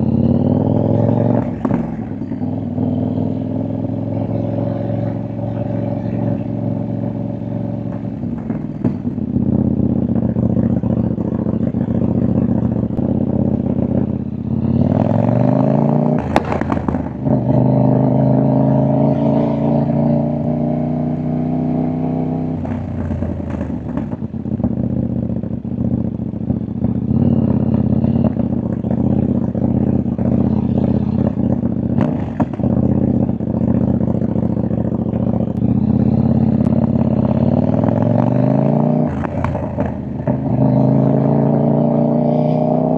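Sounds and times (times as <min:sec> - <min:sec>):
motorcycle engine and exhaust: 0:00.0 - 0:42.9
exhaust pops and crackles: 0:01.4 - 0:02.2, 0:07.8 - 0:09.5, 0:16.1 - 0:17.3, 0:22.6 - 0:25.7, 0:28.3 - 0:35.7, 0:39.0 - 0:40.7.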